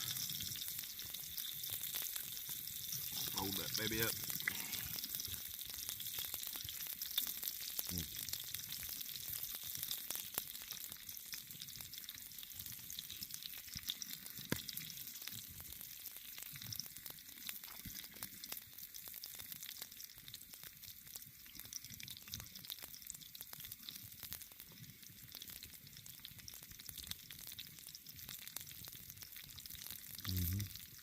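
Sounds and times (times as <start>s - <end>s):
bacon sizzling in a pan: 0.0s - 31.0s.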